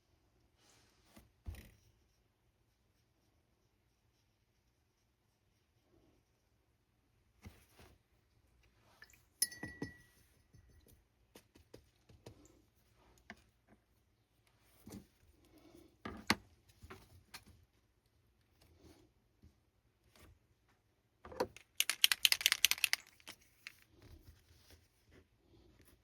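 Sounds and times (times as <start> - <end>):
sharp glassy clink: 9.4 - 10.1
small hard objects tapping: 21.6 - 23.8.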